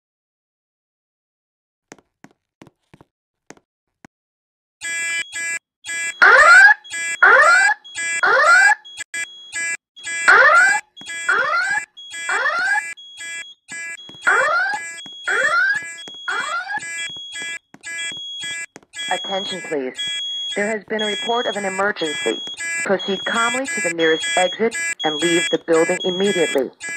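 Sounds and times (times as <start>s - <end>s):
rising whoop alarm tones: 14.2s - 26.9s.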